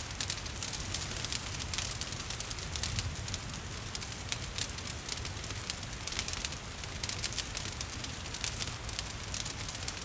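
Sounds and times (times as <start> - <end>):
wood fire crackling: 0.0 - 10.0.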